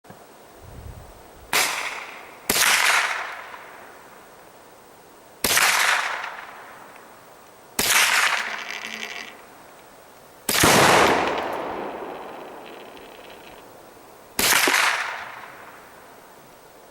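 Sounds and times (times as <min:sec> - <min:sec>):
rifle gunshots: 0:01.5 - 0:03.5, 0:05.4 - 0:06.5, 0:10.5 - 0:13.5, 0:14.4 - 0:15.6
firecrackers exploding: 0:01.5 - 0:03.8, 0:05.4 - 0:06.9, 0:07.8 - 0:09.4, 0:10.5 - 0:13.7, 0:14.4 - 0:15.8.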